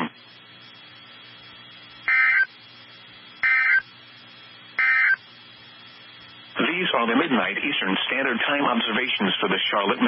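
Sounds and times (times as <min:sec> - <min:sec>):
faint radio hiss: 0:00.0 - 0:10.0
data tone bursts: 0:02.1 - 0:02.6, 0:03.4 - 0:03.9, 0:04.8 - 0:05.3.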